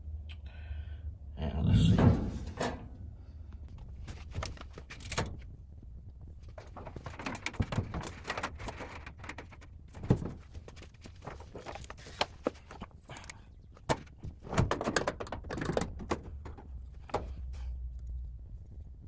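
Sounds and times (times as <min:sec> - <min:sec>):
scraping of parts: 0:01.9 - 0:03.0, 0:06.4 - 0:17.8
clicks and knocks of parts: 0:02.0 - 0:03.0, 0:03.7 - 0:05.6, 0:06.4 - 0:18.1.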